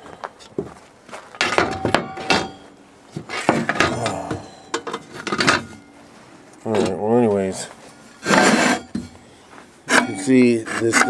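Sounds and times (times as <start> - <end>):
metal parts clinking and knocking: 1.4 - 2.6, 3.5 - 5.9.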